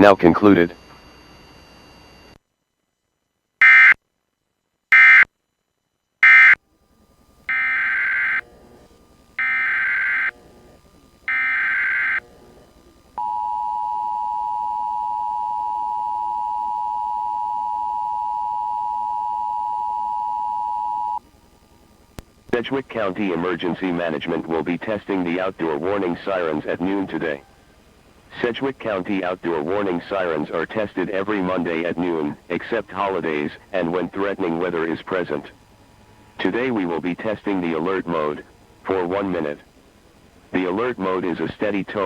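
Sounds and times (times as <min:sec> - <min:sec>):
steady two-tone attention signal: 0:00.0 - 0:02.4, 0:13.2 - 0:21.2
warbling digital data bursts: 0:07.5 - 0:08.4, 0:09.4 - 0:12.2.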